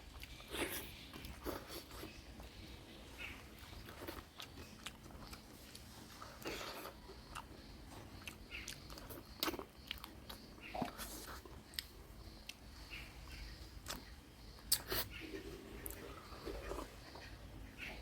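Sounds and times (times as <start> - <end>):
person chewing wetly: 0.0 - 2.6, 3.6 - 12.7, 13.8 - 14.1, 14.7 - 17.3
wet mouth clicks and smacks: 14.7 - 15.1.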